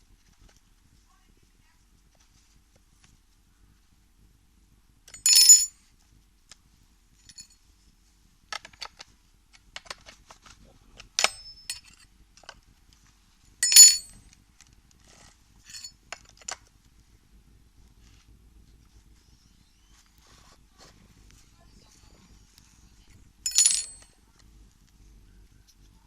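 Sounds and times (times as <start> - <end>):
small metal parts clinking: 5.1 - 5.7, 11.2 - 12.6, 13.6 - 14.2, 15.1 - 16.6, 23.4 - 24.1.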